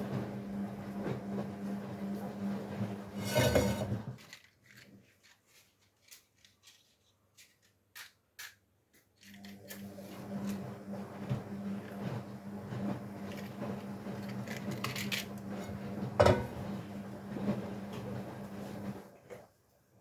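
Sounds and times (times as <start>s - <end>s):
washing machine humming: 0.0s - 4.3s, 9.2s - 20.0s.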